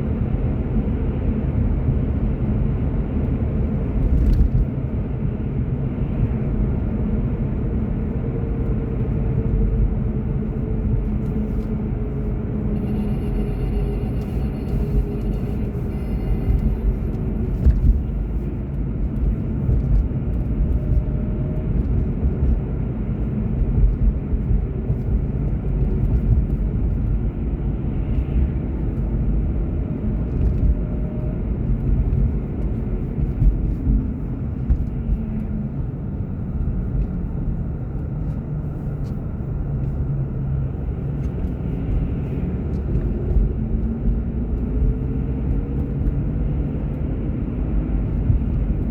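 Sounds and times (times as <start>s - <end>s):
car engine and road rumble: 0.0s - 48.9s
faint tones drifting: 12.6s - 17.1s.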